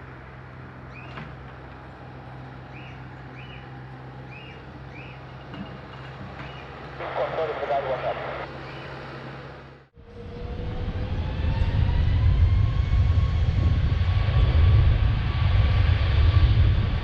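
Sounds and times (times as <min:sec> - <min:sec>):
jet engines spooling up: 0:06.9 - 0:17.0.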